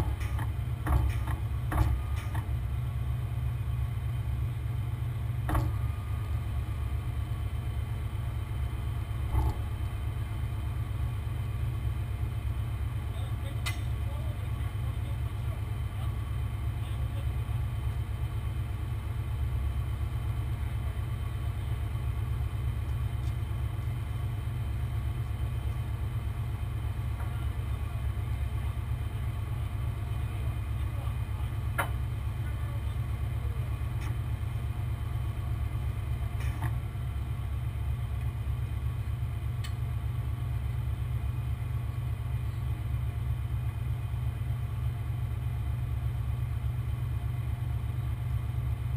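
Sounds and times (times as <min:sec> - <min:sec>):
heavy truck engine rumbling: 0:00.0 - 0:48.9.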